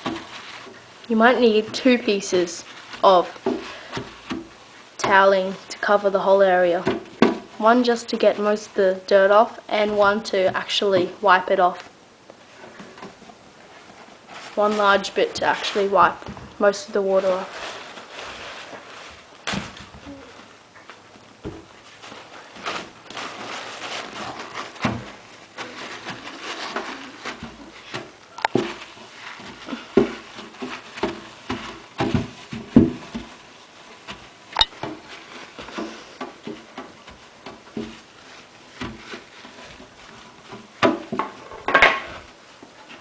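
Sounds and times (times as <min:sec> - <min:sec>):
paper towel wiping: 0:13.6 - 0:19.3, 0:21.8 - 0:40.5.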